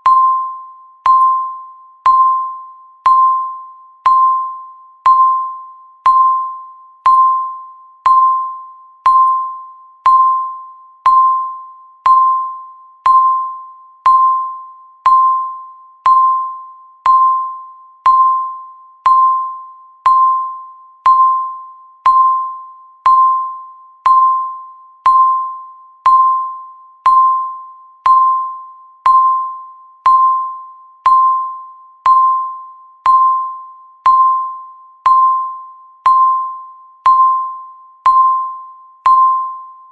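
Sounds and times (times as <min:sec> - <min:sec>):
timer ticking: 0:01.0 - 0:01.5, 0:04.0 - 0:05.4, 0:07.0 - 0:13.5, 0:14.1 - 0:28.5, 0:29.1 - 0:34.5, 0:35.1 - 0:39.5.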